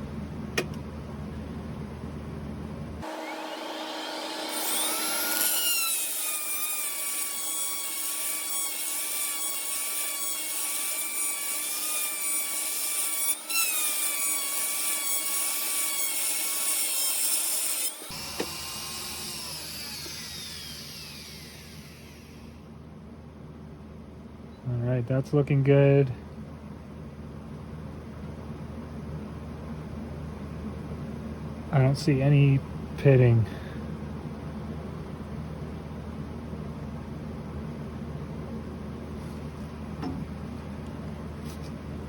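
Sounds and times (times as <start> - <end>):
motor whine: 18.0 - 22.6.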